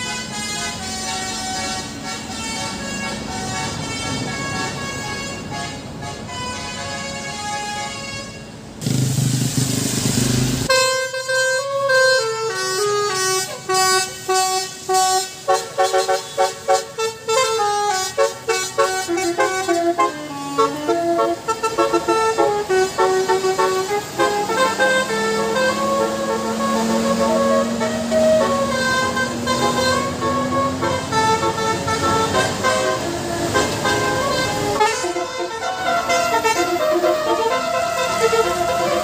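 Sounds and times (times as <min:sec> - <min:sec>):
bus melody horn: 0:00.0 - 0:09.0, 0:10.5 - 0:39.0
loud rush of noise: 0:08.8 - 0:10.7.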